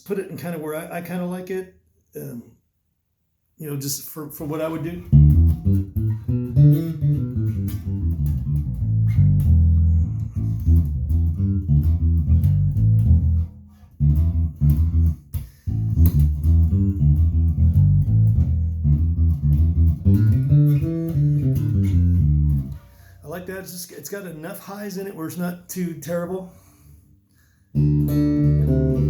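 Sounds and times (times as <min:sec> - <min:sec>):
electric bass plucked notes: 0:05.0 - 0:22.9, 0:27.8 - 0:29.0.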